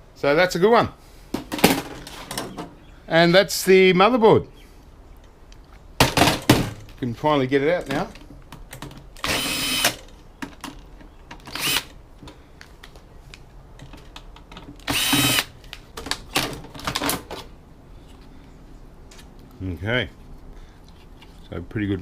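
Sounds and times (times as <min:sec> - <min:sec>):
electric drill running: 0:09.2 - 0:10.0, 0:11.5 - 0:11.9, 0:14.9 - 0:15.5.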